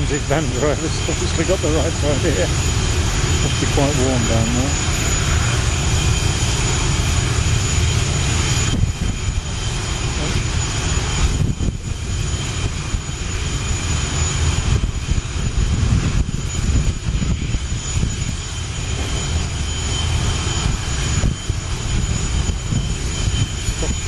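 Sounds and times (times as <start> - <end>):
jet engines whining and rumbling: 0.0 - 24.0.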